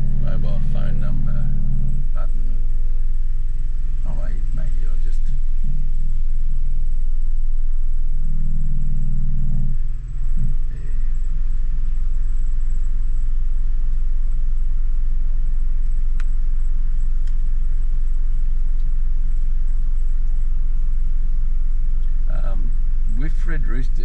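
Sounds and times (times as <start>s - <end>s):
car engine rumble and road noise: 0.0s - 24.0s
faint clicks: 15.8s - 16.4s, 17.0s - 17.5s.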